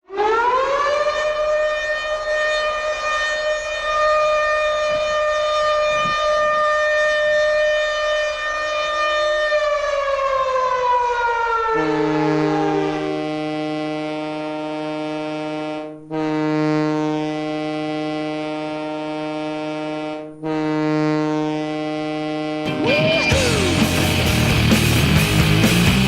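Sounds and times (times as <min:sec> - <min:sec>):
brass music: 0:11.8 - 0:15.6, 0:22.6 - 0:26.0
goal horn blast: 0:11.8 - 0:24.7.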